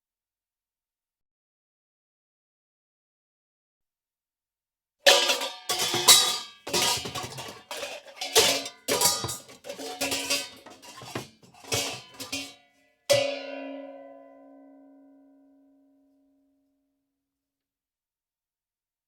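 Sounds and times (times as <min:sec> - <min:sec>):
metallic pots and pans clattering: 0:05.1 - 0:13.7.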